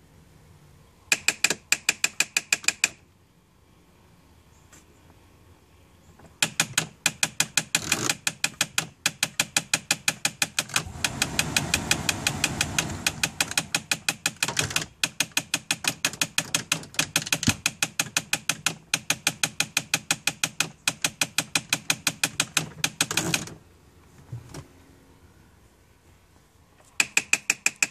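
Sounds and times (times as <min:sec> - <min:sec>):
rapid even clicking: 0:06.4 - 0:23.2
rushing noise: 0:10.8 - 0:14.1.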